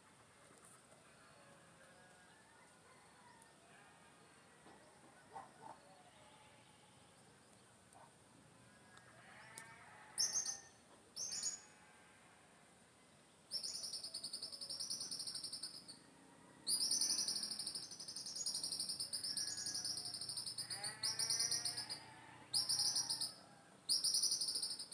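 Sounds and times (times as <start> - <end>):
low drawn-out animal call: 19.1 - 23.8.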